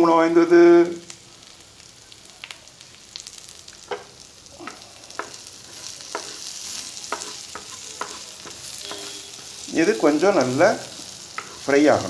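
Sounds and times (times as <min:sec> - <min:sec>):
food sizzling in hot oil: 0:00.0 - 0:12.0
spoon stirring and striking pot: 0:04.7 - 0:09.7, 0:11.3 - 0:11.7.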